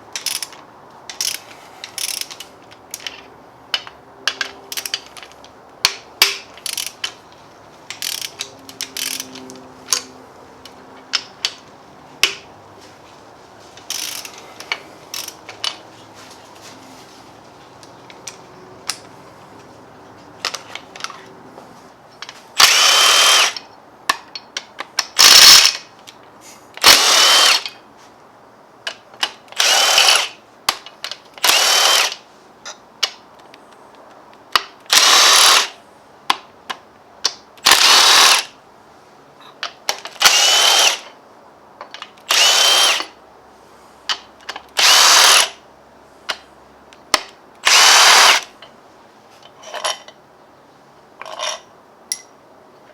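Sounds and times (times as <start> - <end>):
small metallic clicks: 0.1 - 12.4, 13.8 - 15.8
power drill bursts: 22.6 - 23.6, 25.2 - 25.8, 26.8 - 27.7, 29.6 - 30.4, 31.4 - 32.2, 34.9 - 35.8, 37.6 - 38.5, 40.2 - 41.0, 42.3 - 43.2, 44.8 - 45.6, 47.6 - 48.5.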